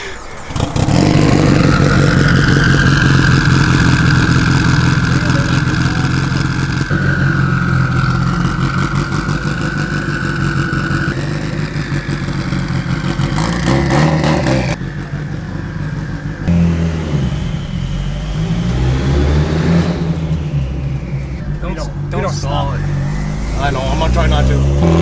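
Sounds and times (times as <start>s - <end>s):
car engine revving: 0.0s - 25.0s
faint turbo whine: 0.0s - 25.0s.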